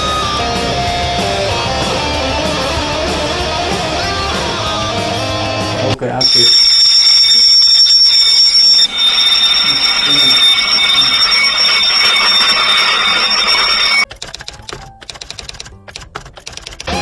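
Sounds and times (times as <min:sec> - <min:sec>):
fire alarm buzzer high-pitched tone: 0:06.2 - 0:14.1.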